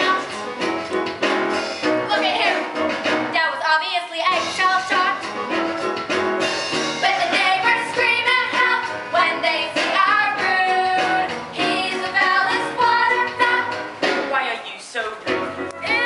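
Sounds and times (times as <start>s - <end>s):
musical accompaniment: 0.0s - 16.0s
voices singing: 7.0s - 14.3s, 15.7s - 16.0s.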